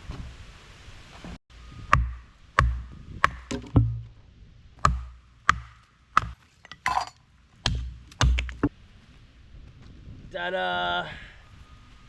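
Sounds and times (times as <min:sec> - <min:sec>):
axe chopping log: 0:01.9 - 0:04.2, 0:04.8 - 0:06.8, 0:07.6 - 0:08.7.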